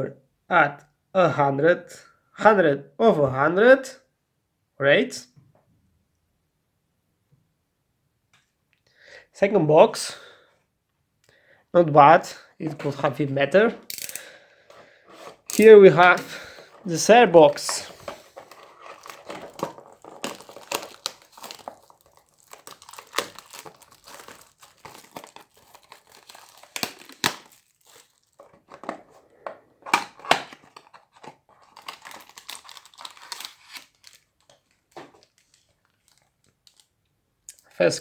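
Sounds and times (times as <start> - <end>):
plastic wrapping crinkling and tearing: 15.5 - 29.2, 29.8 - 37.1.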